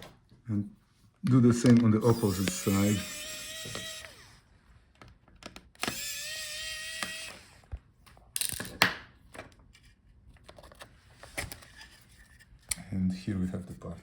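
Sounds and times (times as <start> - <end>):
electric screwdriver whining: 2.0 - 4.4, 5.8 - 7.7.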